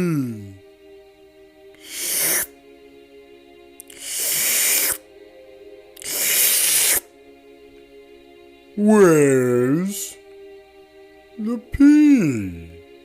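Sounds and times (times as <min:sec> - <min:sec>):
soft background music: 0:00.0 - 0:13.0
animal hissing: 0:01.8 - 0:02.6, 0:03.8 - 0:05.1, 0:06.0 - 0:07.1.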